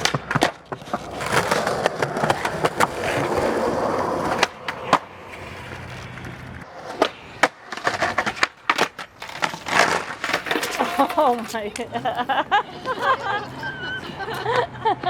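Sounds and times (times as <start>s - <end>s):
skateboard clacks and knocks: 0.0s - 12.0s
skateboard wheels rolling on concrete: 0.0s - 15.0s.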